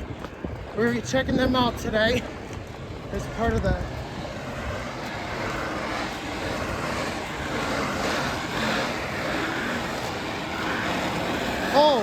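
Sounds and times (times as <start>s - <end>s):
car driving past: 4.0s - 12.0s.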